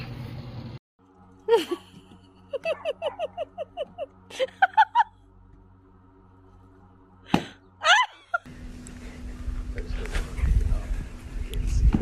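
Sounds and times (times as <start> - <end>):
low hum: 0.0 - 11.9
high-pitched giggling: 1.5 - 5.1.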